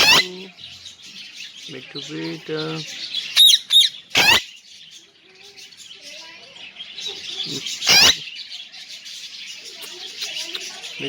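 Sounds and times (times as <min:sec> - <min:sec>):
parrot loud harsh call: 0:00.0 - 0:00.3, 0:03.4 - 0:04.5, 0:07.6 - 0:08.3
birds chirping: 0:00.0 - 0:11.0.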